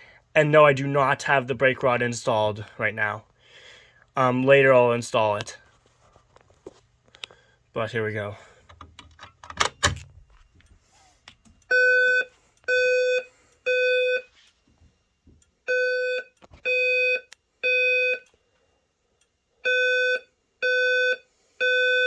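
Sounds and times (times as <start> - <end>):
fire alarm buzzy beeps: 11.6 - 14.4, 15.6 - 18.4, 19.6 - 22.0.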